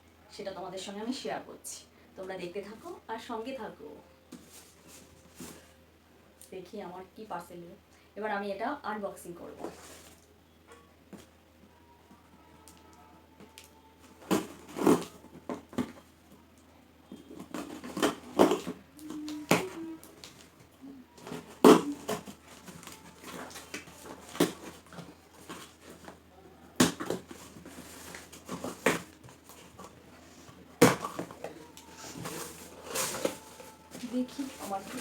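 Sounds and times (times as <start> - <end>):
packaging rustling: 4.3 - 5.8, 9.5 - 10.2, 13.4 - 16.2, 17.1 - 35.0
cardboard tearing: 14.1 - 16.0, 17.2 - 20.6, 21.2 - 35.0
box knocking: 30.8 - 35.0.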